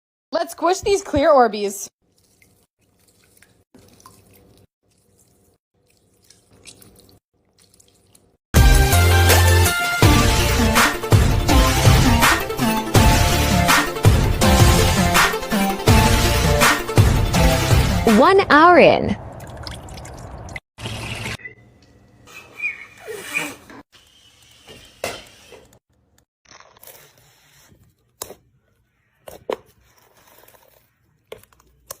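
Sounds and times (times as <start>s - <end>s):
water beads squelching: 2.0s - 8.4s.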